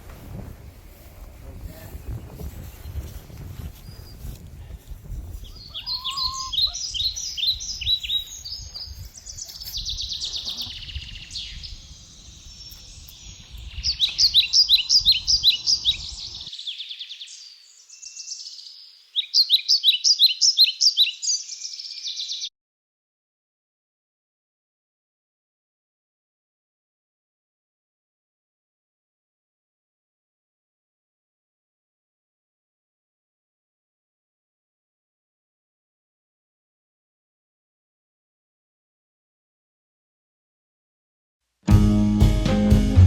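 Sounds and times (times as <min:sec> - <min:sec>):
wind rumble on microphone: 0:00.0 - 0:16.5
songbirds chirping and trilling: 0:00.8 - 0:22.5.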